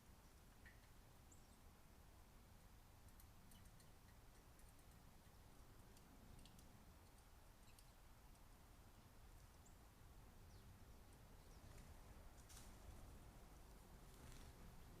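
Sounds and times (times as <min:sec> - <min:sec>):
faint background hum: 0:00.0 - 0:15.0
faint high ticks and clicks: 0:00.3 - 0:01.0, 0:02.8 - 0:08.7.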